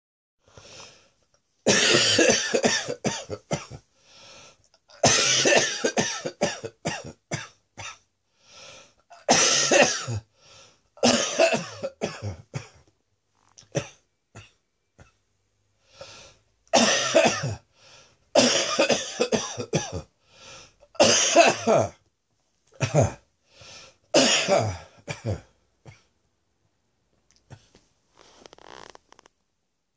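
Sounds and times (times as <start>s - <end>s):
person coughing wetly: 1.7s - 3.8s, 4.9s - 8.0s, 9.2s - 10.2s, 11.0s - 12.9s, 13.7s - 15.2s, 16.7s - 17.6s, 18.4s - 20.1s, 21.0s - 22.0s, 22.8s - 23.2s, 24.1s - 26.1s.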